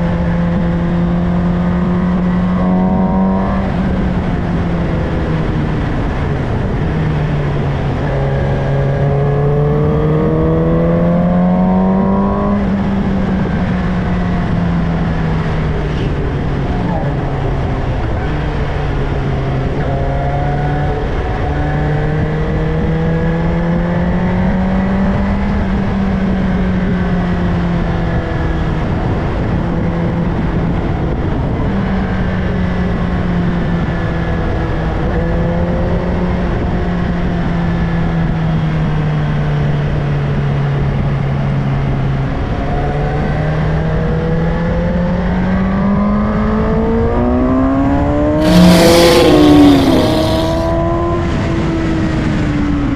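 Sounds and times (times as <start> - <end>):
motorcycle engine at road speed: 0.0 - 52.9
wind noise: 48.4 - 51.9.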